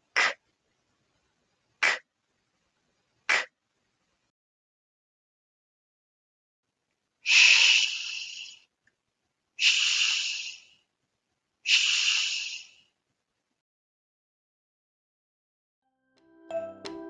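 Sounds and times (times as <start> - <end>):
person saying shhh: 7.3 - 8.7, 9.6 - 10.8, 11.7 - 12.9.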